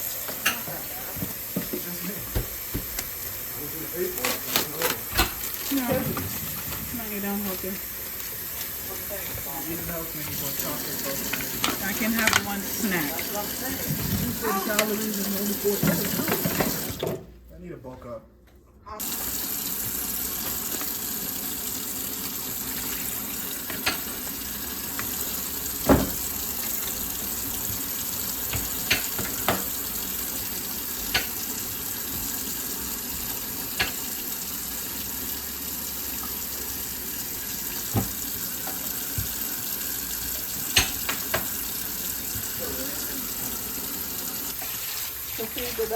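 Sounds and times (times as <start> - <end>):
tap running into a sink: 0.0 - 3.4, 4.2 - 17.2, 19.0 - 21.8, 22.5 - 34.3, 37.2 - 45.0
knocks and clinks in sink: 15.6 - 17.2, 23.6 - 24.2, 25.8 - 27.0, 28.4 - 29.8, 40.6 - 41.6.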